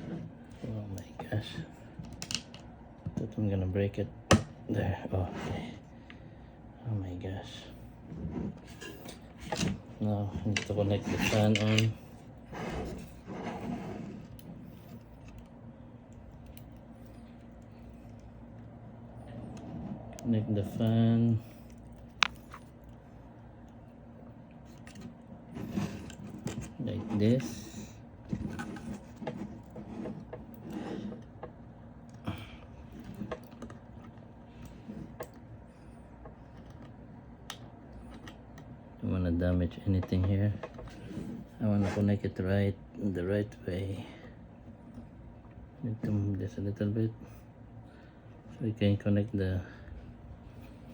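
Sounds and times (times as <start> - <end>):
soft rubbing of hardware: 0.0 - 2.0, 7.6 - 31.6, 40.2 - 42.3
faint low hum: 0.0 - 50.9
hands handling fan clicks: 2.0 - 3.2, 21.6 - 23.0.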